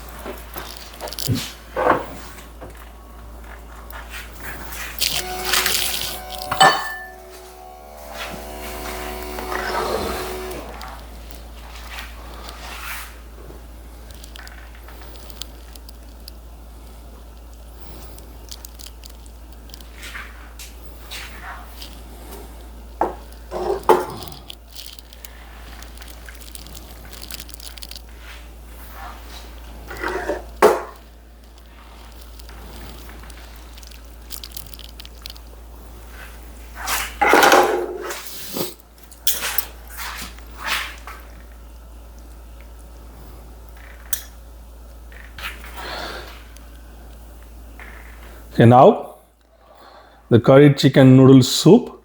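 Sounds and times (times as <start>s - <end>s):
soft squishy sounds: 0.0s - 6.5s, 10.3s - 37.2s
steady low hum: 0.0s - 52.0s
bowl scraping and clattering: 4.4s - 10.9s, 23.0s - 24.7s, 29.8s - 31.1s, 36.8s - 40.9s.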